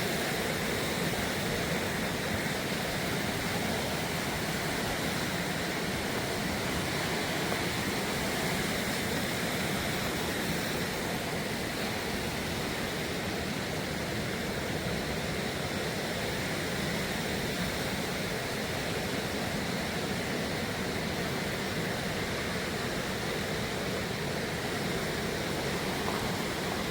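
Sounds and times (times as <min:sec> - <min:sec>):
river water rushing: 0:00.0 - 0:26.9.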